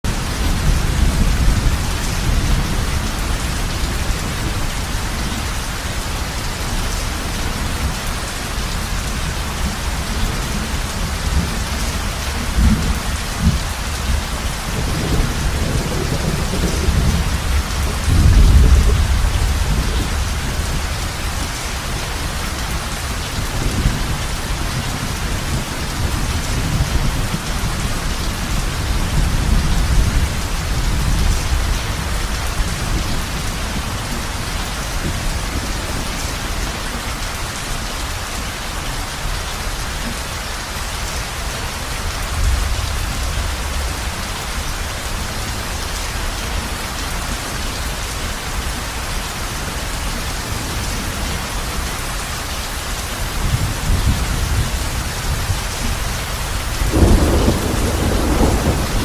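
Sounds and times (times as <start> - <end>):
heavy rain on a roof: 0.0 - 59.0
thunder rumbling: 8.7 - 36.9, 53.3 - 59.0.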